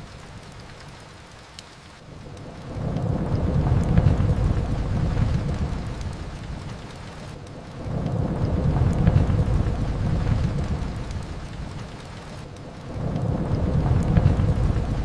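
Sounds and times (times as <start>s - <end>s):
rain falling: 0.0s - 15.0s
low rolling rumbles: 2.7s - 6.9s, 7.8s - 12.2s, 12.9s - 15.0s.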